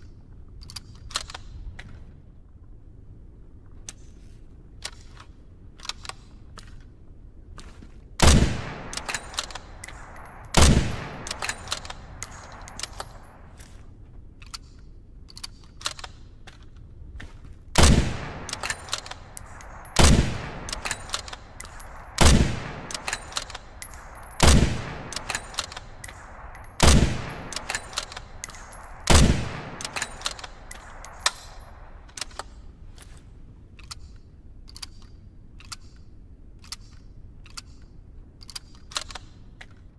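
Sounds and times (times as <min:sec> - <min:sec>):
rifle bolt clicks: 0:00.6 - 0:02.0, 0:04.8 - 0:06.9, 0:08.2 - 0:13.8, 0:14.4 - 0:16.9, 0:17.8 - 0:39.9
rifle shots reverberating: 0:08.2 - 0:13.7, 0:17.8 - 0:32.8.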